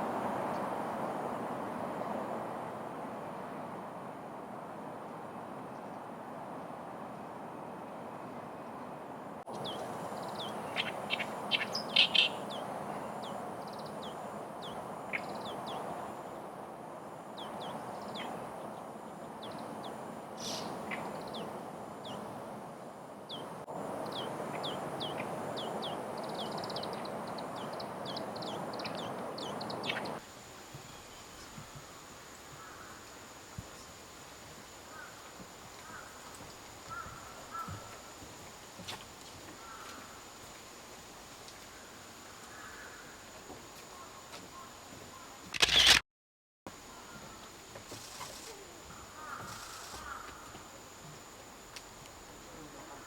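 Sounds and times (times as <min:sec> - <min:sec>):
outdoor background noise: 0:00.0 - 0:46.0, 0:46.7 - 0:53.0
small birds chirping: 0:09.5 - 0:16.1, 0:17.4 - 0:22.3, 0:23.3 - 0:40.2.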